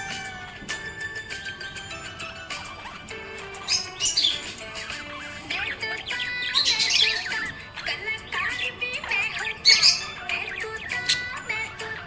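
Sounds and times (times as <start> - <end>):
background music: 0.0 - 12.0
budgerigar chirping: 2.5 - 12.0.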